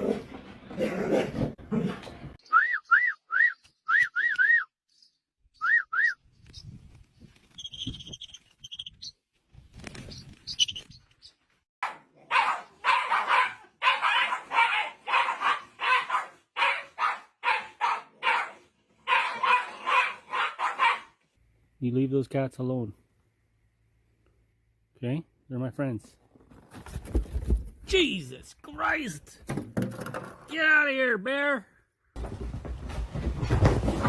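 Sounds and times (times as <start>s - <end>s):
dog barking rapidly: 11.8s - 21.2s.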